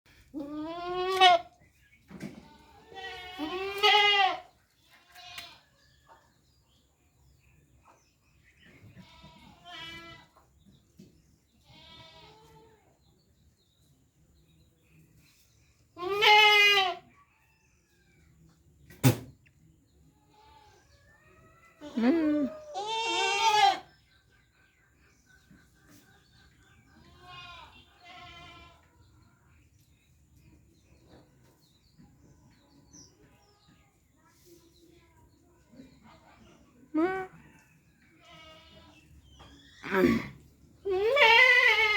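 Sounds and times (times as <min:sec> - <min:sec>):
goat bleating: 0:00.4 - 0:01.5, 0:02.4 - 0:05.7, 0:09.0 - 0:10.3, 0:11.6 - 0:12.7, 0:16.0 - 0:17.0, 0:21.8 - 0:23.9, 0:27.1 - 0:28.8, 0:39.9 - 0:41.9.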